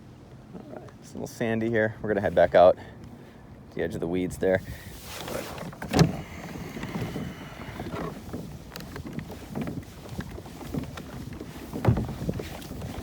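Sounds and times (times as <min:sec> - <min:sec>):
kayak churning through water: 0:04.6 - 0:13.0
knock on kayak: 0:11.8 - 0:12.3.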